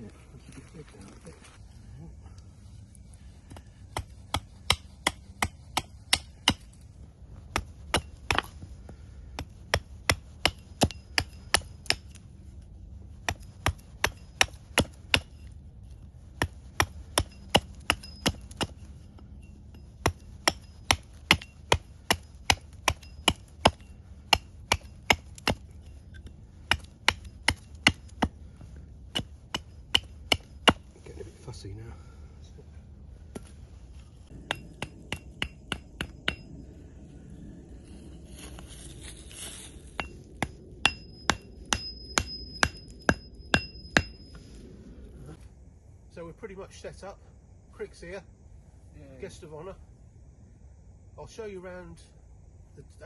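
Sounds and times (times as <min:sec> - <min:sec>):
axe chopping wood: 0:03.5 - 0:06.7, 0:07.5 - 0:12.2, 0:13.2 - 0:15.4, 0:16.4 - 0:18.9, 0:20.0 - 0:25.8, 0:26.6 - 0:30.9.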